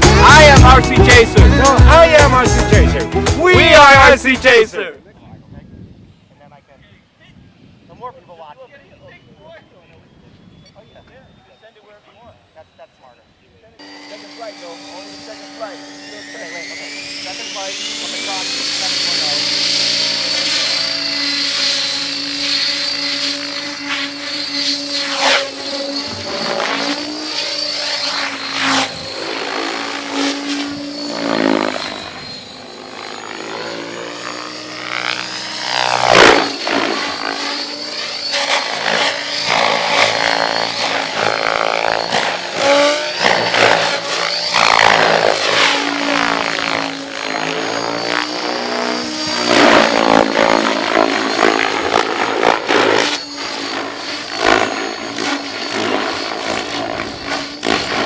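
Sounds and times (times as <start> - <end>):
model helicopter rotor whine: 0.0 - 5.6, 7.4 - 58.0.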